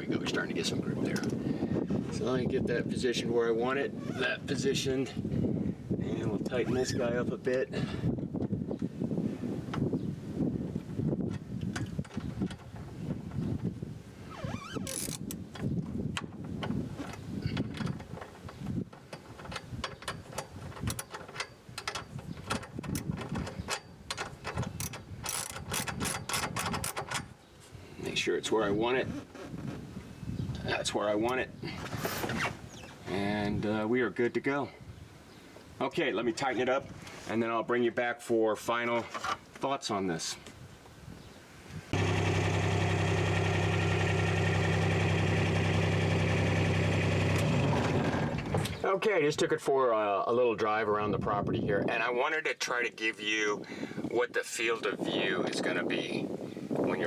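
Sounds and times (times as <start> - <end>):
ratchet wrench clicking: 14.9 - 15.4, 24.8 - 27.2
diesel engine running: 42.0 - 48.5.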